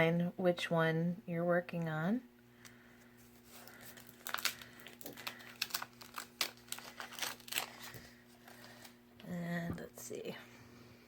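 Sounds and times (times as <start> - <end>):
cardstock and vinyl crinkling: 2.6 - 9.9.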